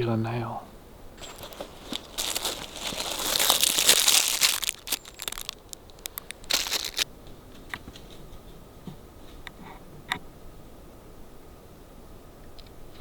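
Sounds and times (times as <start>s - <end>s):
crinkling and rustling handling noise: 1.2s - 7.0s.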